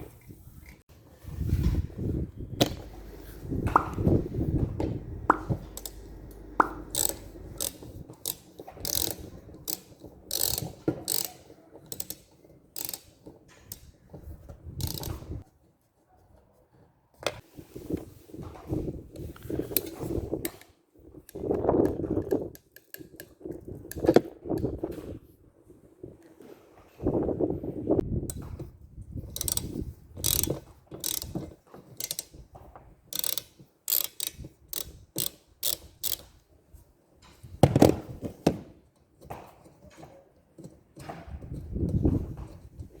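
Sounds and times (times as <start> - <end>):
mechanical clicks and rattles: 2.6 - 11.3, 29.3 - 31.4, 33.2 - 36.2.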